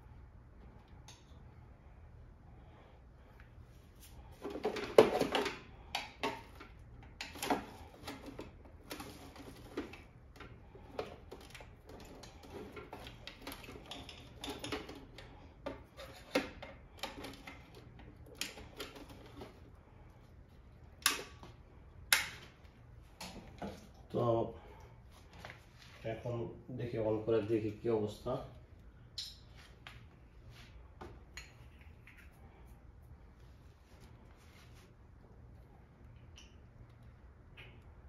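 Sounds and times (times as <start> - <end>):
hands and tools clicking and tapping: 4.4 - 19.6, 21.0 - 22.6.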